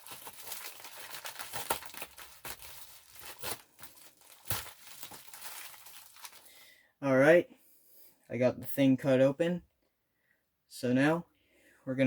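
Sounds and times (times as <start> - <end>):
cardboard crinkling and tearing: 0.0 - 6.5.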